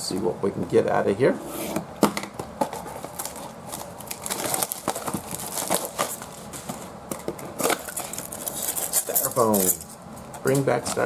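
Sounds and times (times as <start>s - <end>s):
cardboard and wrapping crinkling: 2.6s - 9.9s.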